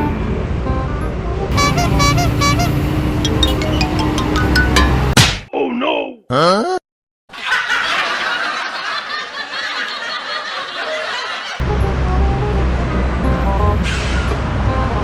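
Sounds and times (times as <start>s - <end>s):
low street traffic: 0.0s - 5.2s, 7.9s - 15.0s
music: 0.0s - 5.2s, 11.6s - 15.0s
laughter: 7.3s - 11.6s.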